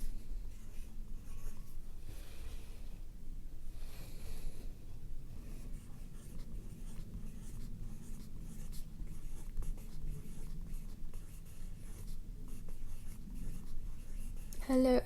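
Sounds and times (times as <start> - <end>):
pencil scratching on paper: 0.0 - 1.8, 5.4 - 14.9.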